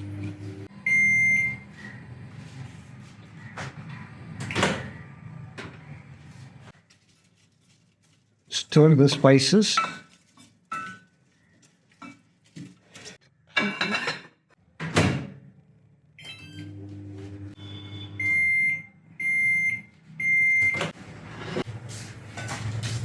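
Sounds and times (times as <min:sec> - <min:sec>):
microwave oven humming: 0:00.0 - 0:02.7, 0:16.1 - 0:21.2.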